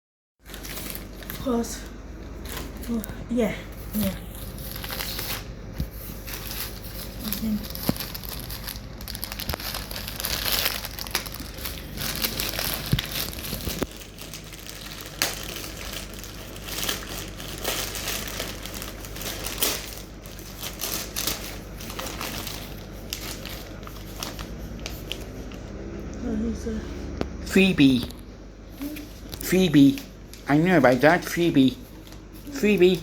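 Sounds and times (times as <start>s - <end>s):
packaging crinkling: 0.4s - 3.2s, 3.8s - 25.8s.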